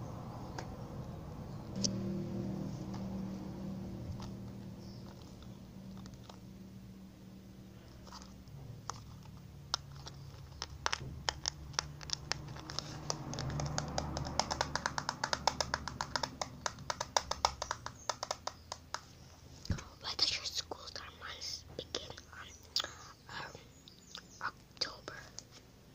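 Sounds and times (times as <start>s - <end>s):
fingernails tapping on hard object: 9.7s - 19.1s.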